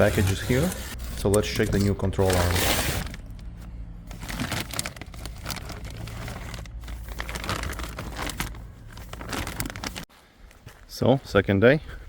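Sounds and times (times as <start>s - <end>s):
packaging crinkling and rustling: 0.0s - 3.5s, 4.1s - 10.1s.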